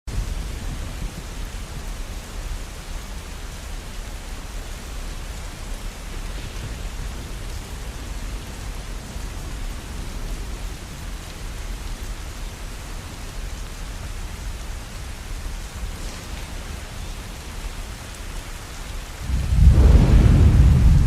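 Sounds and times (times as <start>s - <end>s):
steady rainfall: 0.1s - 21.0s
deep low rumble: 19.2s - 21.0s.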